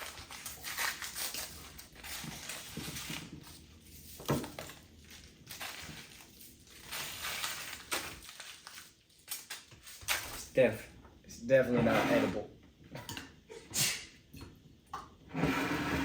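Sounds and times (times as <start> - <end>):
scraping and rustling of packaging: 0.0 - 10.5.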